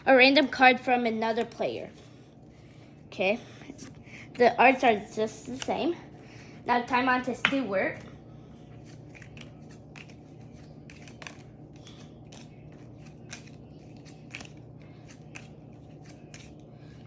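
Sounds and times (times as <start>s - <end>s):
low room hum: 0.0s - 17.0s
playing cards clicking and rustling: 8.8s - 16.6s.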